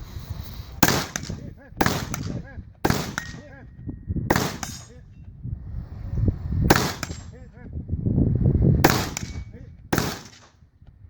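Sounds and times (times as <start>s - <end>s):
rifle shots: 0.7s - 3.6s, 4.3s - 5.0s, 6.7s - 7.4s, 8.8s - 10.6s.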